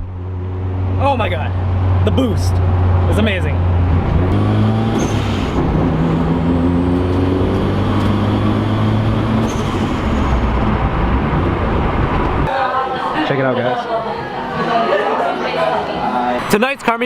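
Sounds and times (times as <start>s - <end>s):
road noise: 0.0s - 14.8s
car engine under boost: 3.7s - 12.5s.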